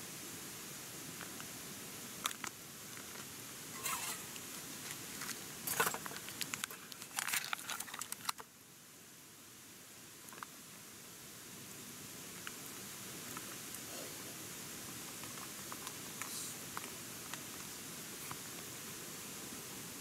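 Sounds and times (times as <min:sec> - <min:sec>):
crinkling and rustling: 0:02.2 - 0:08.5.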